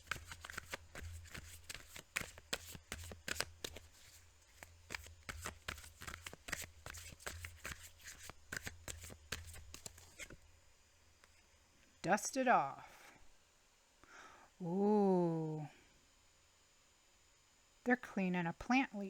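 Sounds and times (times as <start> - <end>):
cards being shuffled: 0.0 - 10.4.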